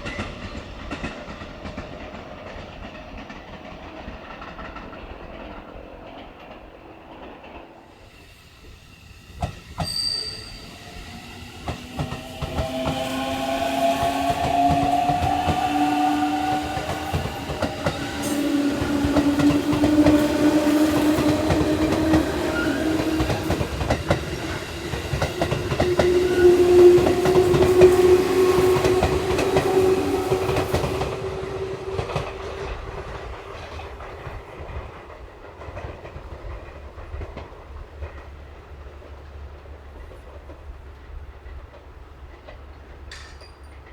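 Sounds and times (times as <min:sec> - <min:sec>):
train wheels clattering: 0:00.0 - 0:43.9
electric train motors whining: 0:08.2 - 0:32.9.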